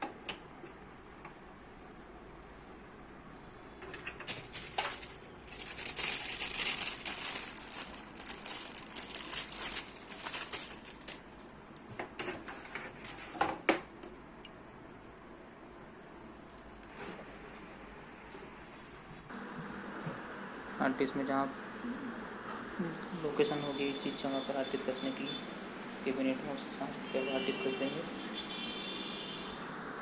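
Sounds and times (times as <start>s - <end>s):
computer parts rustling: 3.8s - 13.7s, 16.3s - 17.6s.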